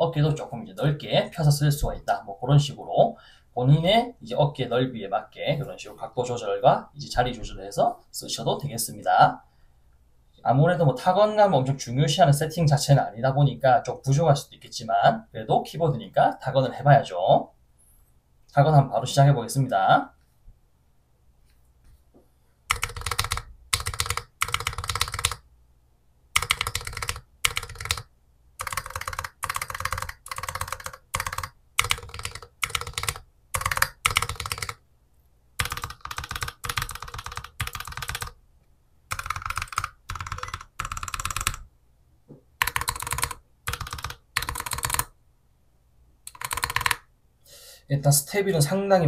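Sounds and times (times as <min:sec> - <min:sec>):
mechanical keyboard typing: 0:22.7 - 0:25.4, 0:26.4 - 0:34.8, 0:35.6 - 0:38.4, 0:39.1 - 0:41.7, 0:42.6 - 0:45.1, 0:46.3 - 0:47.0.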